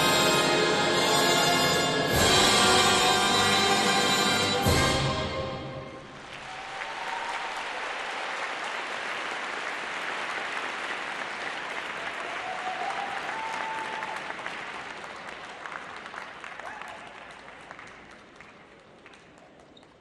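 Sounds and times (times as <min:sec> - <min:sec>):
crowd applauding and cheering: 0:06.0 - 0:20.0.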